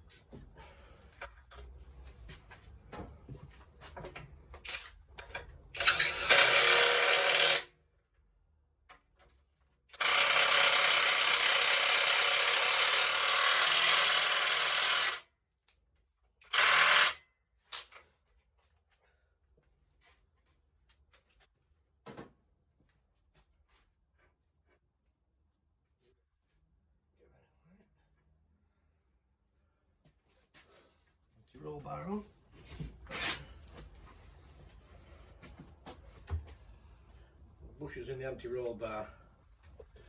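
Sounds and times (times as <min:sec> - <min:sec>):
power tool running in bursts: 0:10.0 - 0:15.2, 0:16.5 - 0:17.2.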